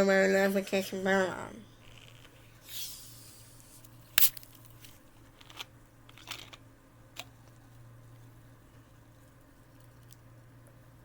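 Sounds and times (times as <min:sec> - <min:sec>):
can clicks: 0:04.2 - 0:04.5.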